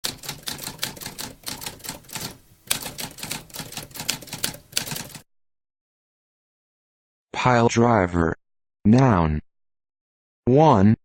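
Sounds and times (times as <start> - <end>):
typewriter keys clacking: 0.0 - 5.2.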